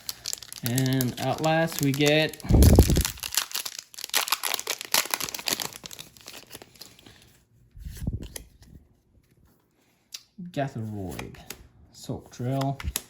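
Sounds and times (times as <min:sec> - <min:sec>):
wrapper tearing and crinkling: 0:00.0 - 0:07.2.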